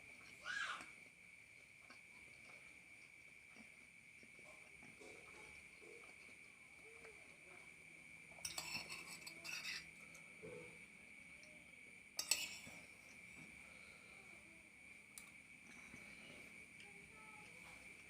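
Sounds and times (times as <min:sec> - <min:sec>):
cutlery clinking on a plate: 0:08.4 - 0:09.9, 0:12.2 - 0:12.9.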